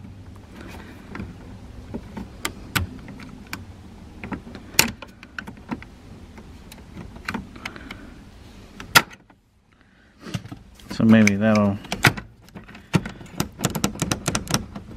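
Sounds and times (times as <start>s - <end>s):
plastic switch clicks and rattles: 10.8s - 14.9s.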